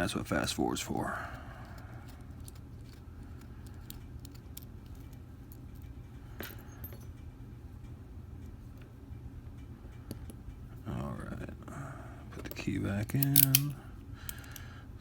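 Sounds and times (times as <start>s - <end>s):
steady low hum: 0.0s - 15.0s
metallic clicks and clinks: 13.2s - 14.6s.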